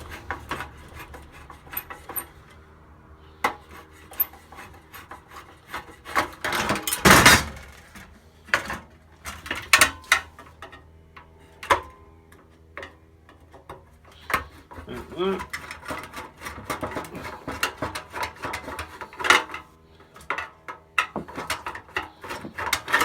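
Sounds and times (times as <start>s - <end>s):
screwdriver scraping metal: 0.0s - 2.6s, 3.4s - 7.0s.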